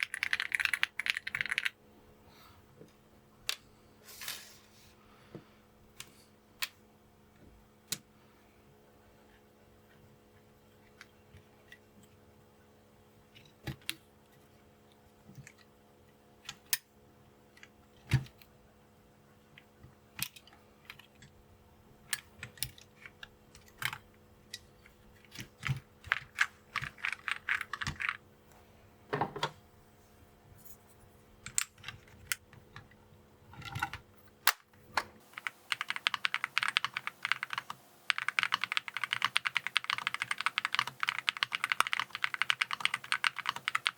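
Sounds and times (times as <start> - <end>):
mechanical keyboard typing: 0.0 - 1.8, 25.3 - 28.2, 35.2 - 43.9.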